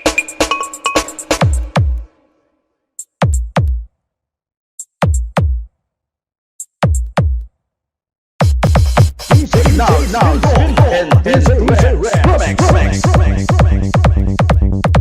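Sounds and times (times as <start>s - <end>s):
deep kick drums dropping in pitch: 8.4s - 15.0s.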